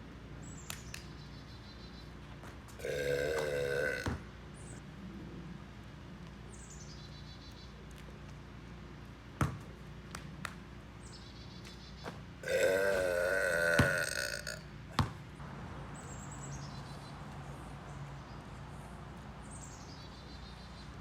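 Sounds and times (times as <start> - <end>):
man burping: 2.8 - 4.2, 12.4 - 15.0.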